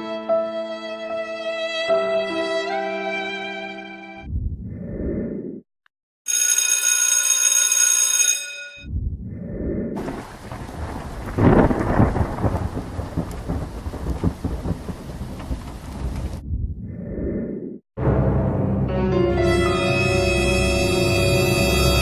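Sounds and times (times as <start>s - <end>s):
bright ringing tone: 6.3s - 8.9s
steady rain: 10.0s - 16.4s
loud thunderclap: 10.0s - 16.6s.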